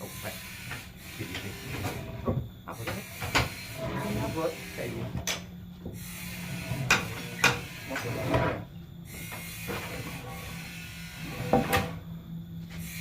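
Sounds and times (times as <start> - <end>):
sawmill machinery humming: 0.0 - 13.0
wood and metal knocks and clatter: 6.8 - 8.6, 11.4 - 12.0.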